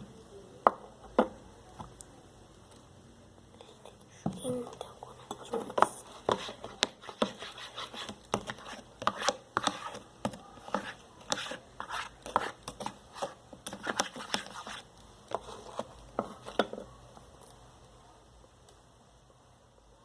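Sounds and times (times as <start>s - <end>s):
slime stirring clicks and taps: 3.8s - 17.6s.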